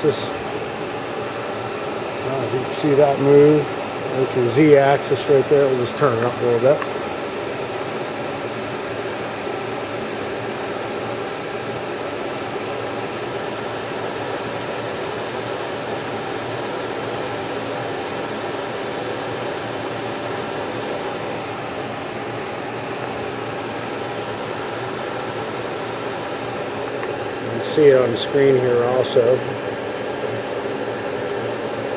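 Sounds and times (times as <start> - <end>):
milling machine whirring: 0.0 - 31.9.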